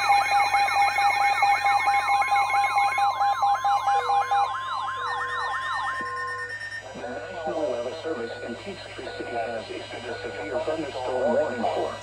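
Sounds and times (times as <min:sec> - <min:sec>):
steady high tones: 0:00.0 - 0:12.0
fast pulsing beep: 0:00.8 - 0:12.0
rising and falling siren sweep: 0:01.2 - 0:06.8.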